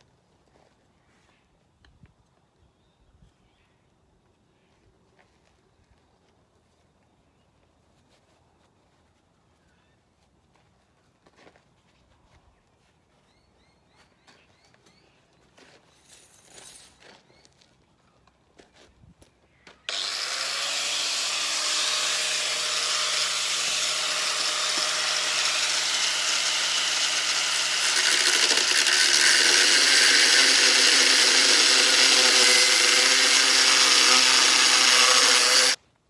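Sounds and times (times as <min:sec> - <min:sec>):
power tool cutting steel: 0:19.9 - 0:35.8.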